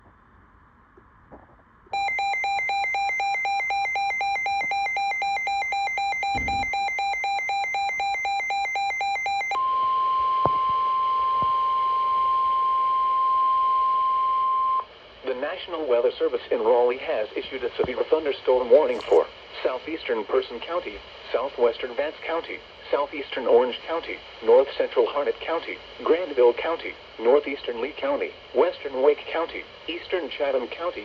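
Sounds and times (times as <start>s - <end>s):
steady high alarm tone: 2.0s - 11.3s, 18.9s - 19.2s.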